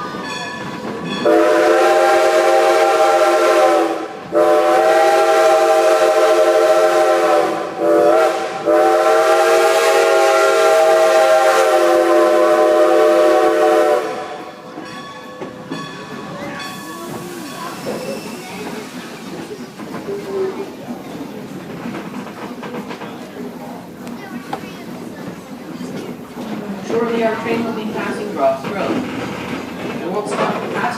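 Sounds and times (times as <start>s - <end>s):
train rolling on rails: 0.0s - 30.9s
steam locomotive whistle blasts: 1.2s - 14.5s.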